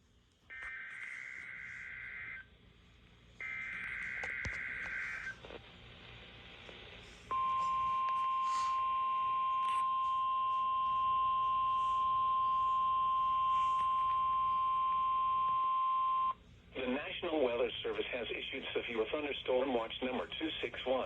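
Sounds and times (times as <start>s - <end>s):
faint radio hiss: 0.0s - 21.0s
long steady beep: 7.3s - 16.4s.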